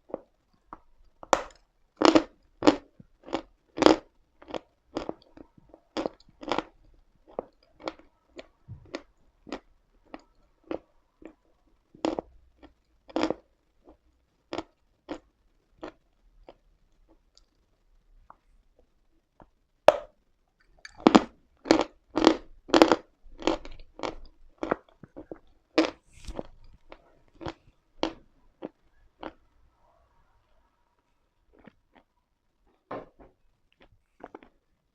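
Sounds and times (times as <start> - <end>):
chalk crunching being chewed: 20.6 - 29.4, 31.6 - 32.1, 33.7 - 34.6.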